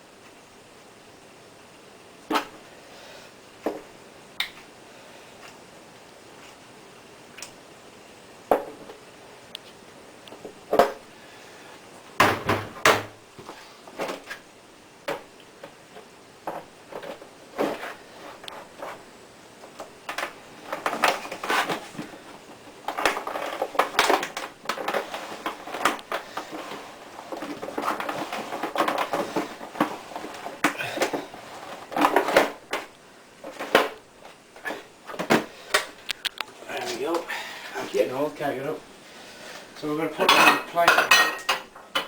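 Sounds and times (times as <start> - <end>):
kitchen utensils clattering: 40.1 - 42.0.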